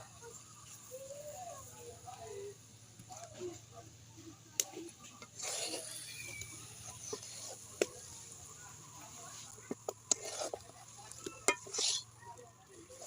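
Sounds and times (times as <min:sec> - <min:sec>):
spoon scraping a pot: 0:05.2 - 0:07.7, 0:09.7 - 0:12.2.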